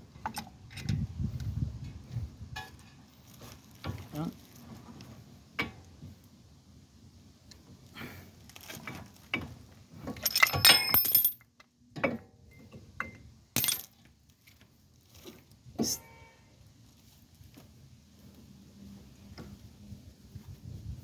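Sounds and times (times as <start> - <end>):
jangling metallic clatter: 10.1 - 11.5, 13.6 - 14.0
small metal parts clinking: 10.1 - 11.7, 13.6 - 14.6.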